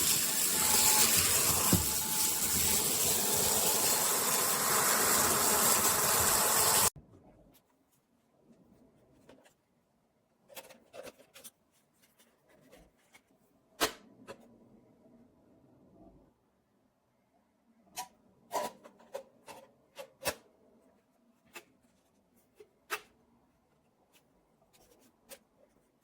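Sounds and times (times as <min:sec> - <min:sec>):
stick vacuum whining: 0:00.0 - 0:06.9.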